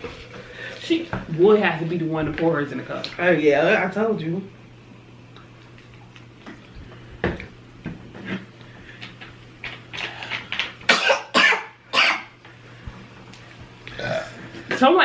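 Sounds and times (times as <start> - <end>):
person coughing: 10.9 - 12.3.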